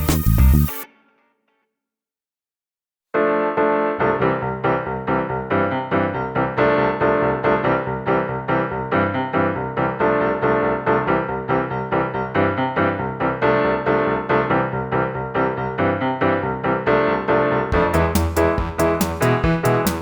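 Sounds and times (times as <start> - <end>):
keyboard tune with steady beat: 15.8 - 20.0.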